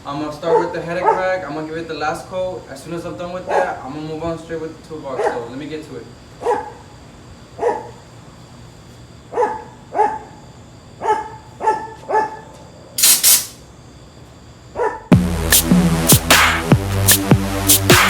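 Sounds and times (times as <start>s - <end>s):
dog barking: 0.5s - 1.3s, 3.5s - 3.8s, 5.2s - 5.4s, 6.4s - 6.8s, 7.6s - 8.0s, 9.3s - 10.4s, 11.0s - 12.5s, 14.8s - 15.1s
loud hissing bursts: 13.0s - 13.6s, 15.5s - 18.0s
electronic music with a beat: 15.1s - 18.0s.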